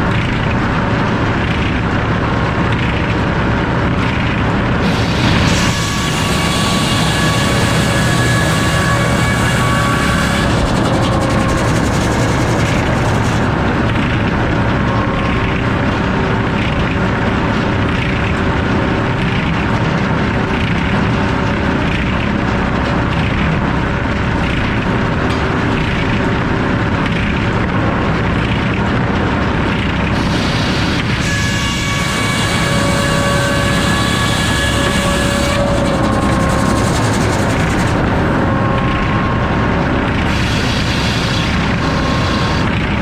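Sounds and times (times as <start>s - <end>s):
circular saw blade sawing: 4.8s - 19.2s, 30.0s - 43.0s.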